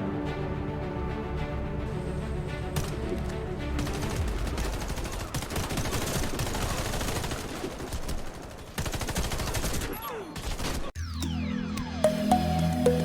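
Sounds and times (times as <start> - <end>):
rapid gunfire: 3.8 - 10.9.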